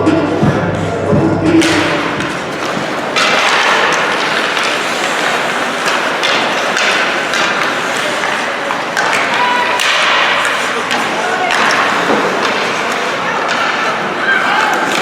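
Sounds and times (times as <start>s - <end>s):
sticks and puck knocking: 1.6s - 15.0s
skates hissing on ice: 2.3s - 14.3s.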